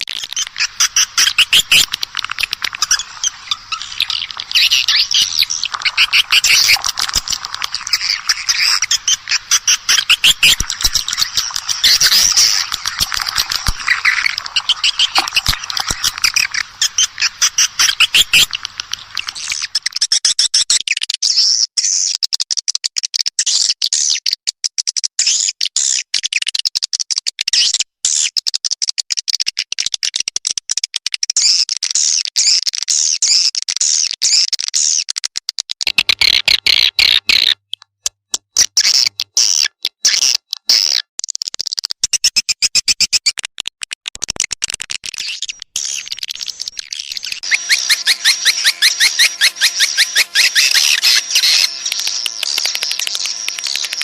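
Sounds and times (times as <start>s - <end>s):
bird calls twittering: 0.1s - 20.2s, 45.2s - 54.0s.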